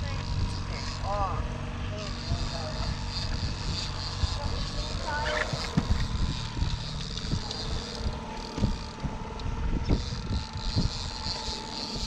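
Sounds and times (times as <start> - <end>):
boat motor running: 0.0 - 12.0
wind buffeting microphone: 0.0 - 12.0
low thumps: 2.4 - 11.3.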